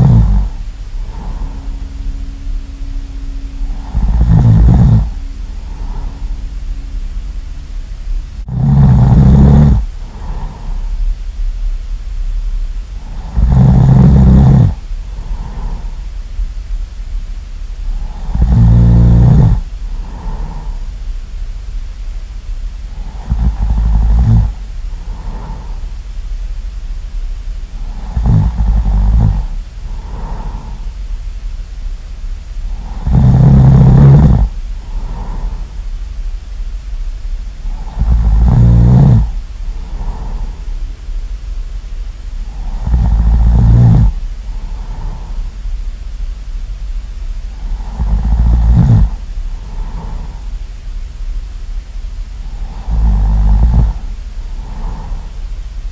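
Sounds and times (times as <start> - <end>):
loud snoring: 0.0 - 2.0, 3.6 - 6.4, 8.4 - 11.0, 13.0 - 16.0, 17.9 - 20.8, 22.9 - 25.8, 27.7 - 30.9, 32.7 - 35.7, 37.6 - 40.6, 42.4 - 45.5, 47.5 - 50.5, 52.4 - 55.4
breathy out-breath: 0.0 - 6.8, 8.4 - 11.1, 13.0 - 16.1, 17.9 - 20.9, 24.4 - 26.0, 27.8 - 31.0, 32.7 - 35.9, 37.6 - 40.8, 43.7 - 45.6, 47.6 - 50.6, 52.4 - 55.5
low hum: 0.0 - 55.9.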